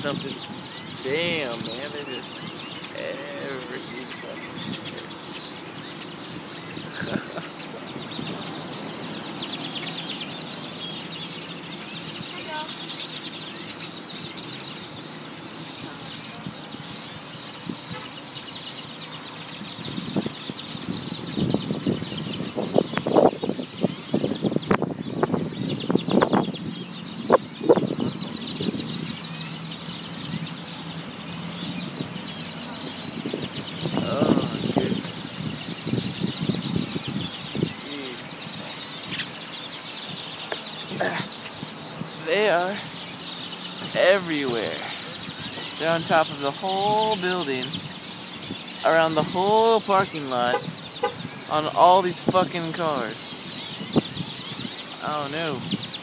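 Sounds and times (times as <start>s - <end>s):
flock of birds chirping: 0.0s - 56.0s.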